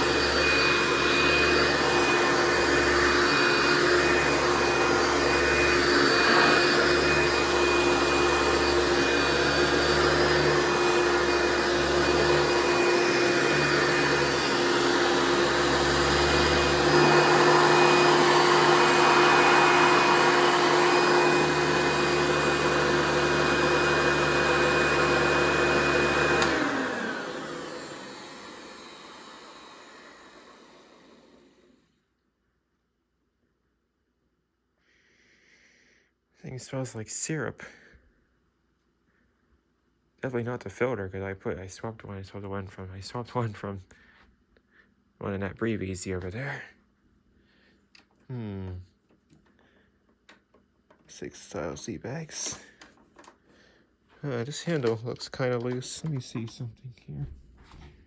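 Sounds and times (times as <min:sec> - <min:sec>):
vacuum cleaner motor whine: 0:00.0 - 0:31.9, 0:54.6 - 0:56.2.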